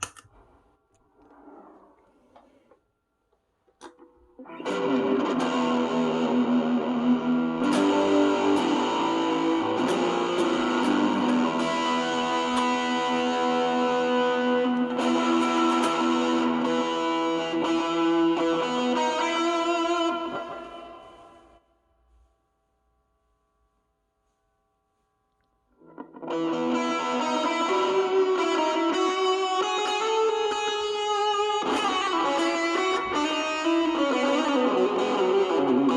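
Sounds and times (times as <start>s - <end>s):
distorted electric guitar: 3.8s - 21.6s, 25.8s - 35.9s.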